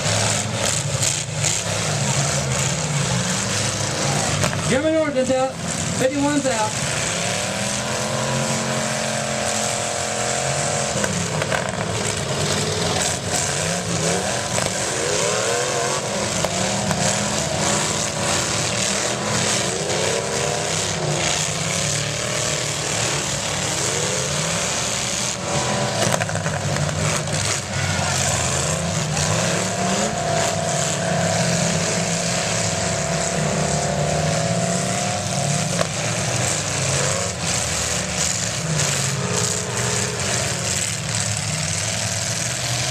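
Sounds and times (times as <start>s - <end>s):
car engines revving: 0.0s - 42.9s
cars colliding with bangs: 9.4s - 42.2s.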